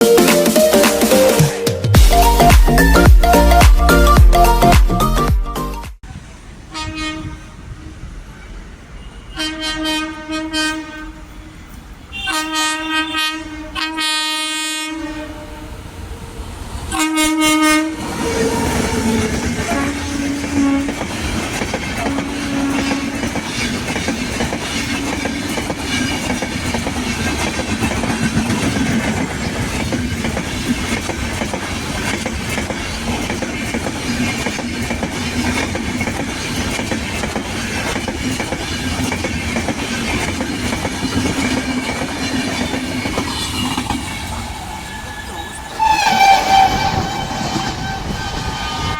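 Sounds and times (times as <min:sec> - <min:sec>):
train passing with wheel clatter: 0:06.0 - 0:48.9
locomotive horn blasts: 0:06.7 - 0:07.5, 0:09.0 - 0:15.7, 0:16.9 - 0:21.0, 0:22.0 - 0:23.3, 0:45.0 - 0:48.9.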